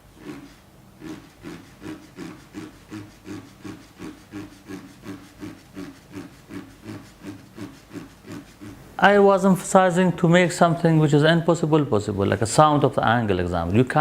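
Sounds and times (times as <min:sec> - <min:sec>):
hand tool scratching paper: 0:00.0 - 0:08.8.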